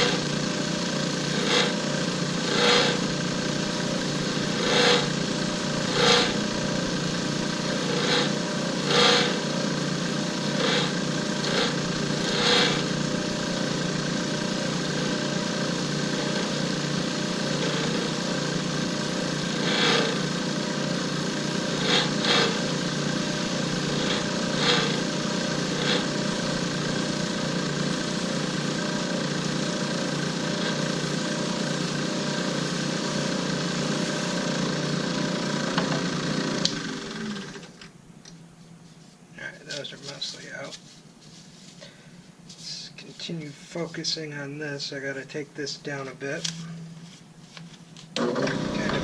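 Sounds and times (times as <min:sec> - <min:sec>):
lathe tool scraping: 0:00.0 - 0:37.4, 0:48.2 - 0:49.0
lathe motor humming: 0:00.0 - 0:37.7, 0:48.2 - 0:49.0.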